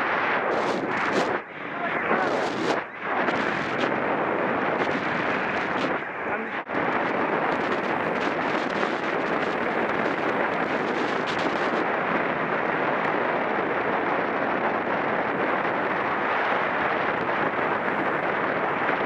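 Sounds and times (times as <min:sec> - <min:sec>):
wind rushing over microphone: 0:00.0 - 0:19.0.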